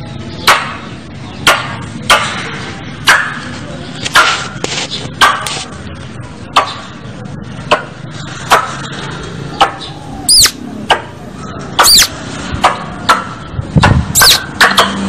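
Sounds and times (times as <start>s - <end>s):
squirrel whistled call: 9.6s - 10.7s, 11.8s - 12.2s, 14.2s - 14.4s
squirrel chirping: 9.8s - 10.6s, 11.8s - 12.2s, 14.2s - 14.4s.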